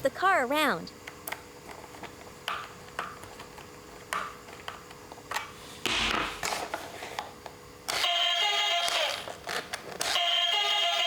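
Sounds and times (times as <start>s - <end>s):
electronic toy music tune: 8.0s - 9.3s, 10.1s - 11.0s.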